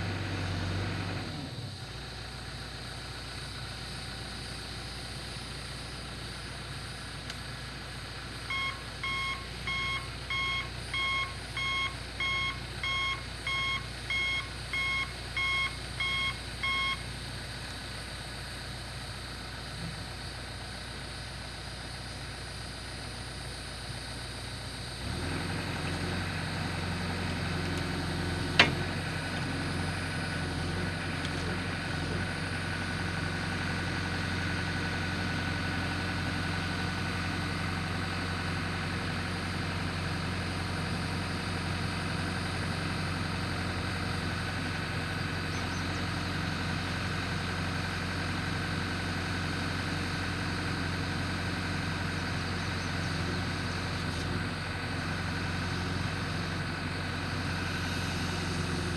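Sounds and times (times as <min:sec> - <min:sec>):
backhoe engine running: 0:00.0 - 0:58.9
reversing alarm beeping: 0:08.5 - 0:17.1.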